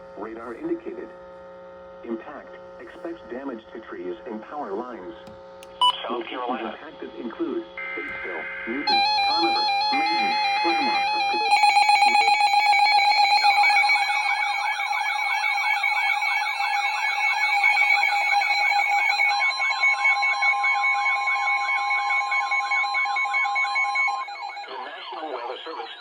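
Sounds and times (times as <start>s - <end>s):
steady electronic alarm tone: 7.8s - 26.0s
warbling siren-like sweeps: 8.9s - 26.0s.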